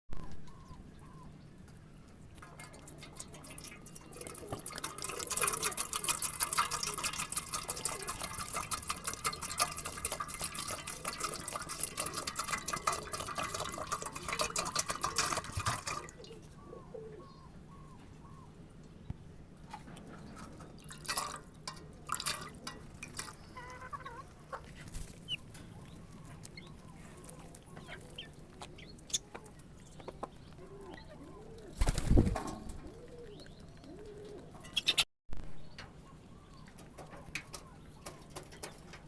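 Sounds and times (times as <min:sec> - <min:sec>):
water splashing and dripping: 0:02.4 - 0:16.4, 0:20.4 - 0:23.7
chickens peeping: 0:22.8 - 0:35.1.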